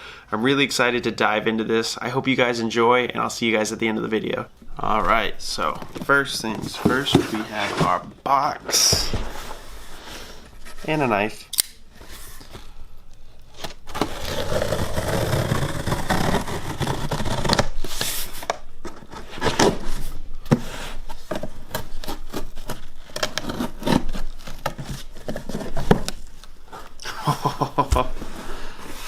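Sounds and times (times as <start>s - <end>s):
cardboard scraping: 4.8s - 11.3s, 13.5s - 26.9s, 28.1s - 29.0s
knife cutting cardboard box: 13.9s - 26.3s.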